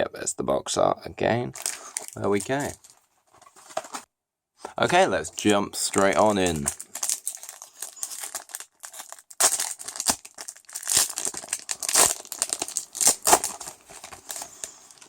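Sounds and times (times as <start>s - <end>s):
foil wrapper tearing and crinkling: 1.6s - 3.0s, 5.9s - 15.0s.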